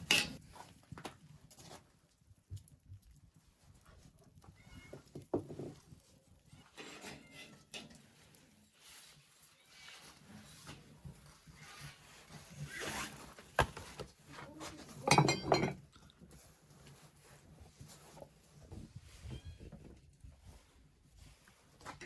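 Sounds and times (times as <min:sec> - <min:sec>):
handling scrape: 0:08.8 - 0:14.0.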